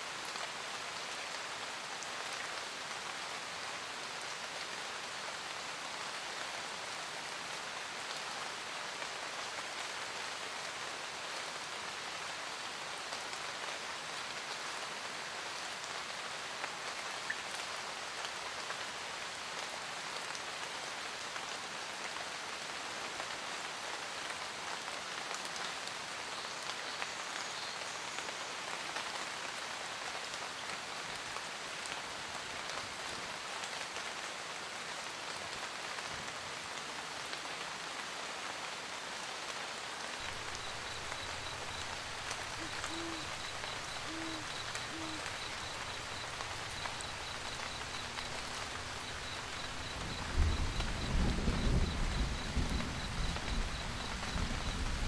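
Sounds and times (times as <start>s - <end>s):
rain pattering on a roof: 0.0s - 55.0s
owl hooting: 40.2s - 54.8s.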